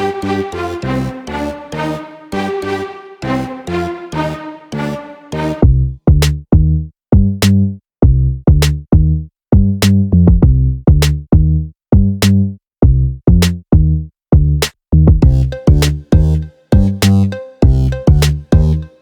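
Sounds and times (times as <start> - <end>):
clipped bass notes: 5.4 - 18.9
drum machine clap: 8.5 - 9.0, 9.6 - 11.4, 14.6 - 18.8.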